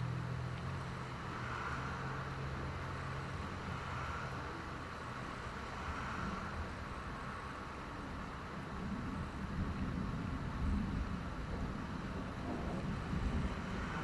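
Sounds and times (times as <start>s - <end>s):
steady rain: 0.0s - 14.0s
low thunder rumble: 8.2s - 14.0s.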